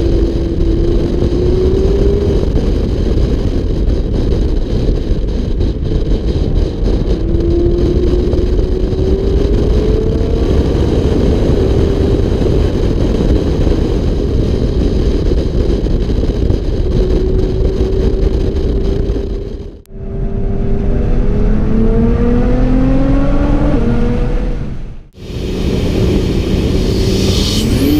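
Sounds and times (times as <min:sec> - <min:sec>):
wind and road noise: 0:00.0 - 0:27.9
car engine accelerating: 0:05.6 - 0:13.3, 0:16.5 - 0:27.9.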